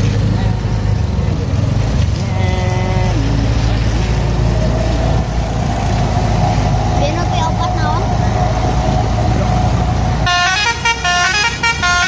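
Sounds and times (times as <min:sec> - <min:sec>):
bus engine rumble: 0:00.0 - 0:12.0
musical bus horn tune: 0:10.2 - 0:12.0.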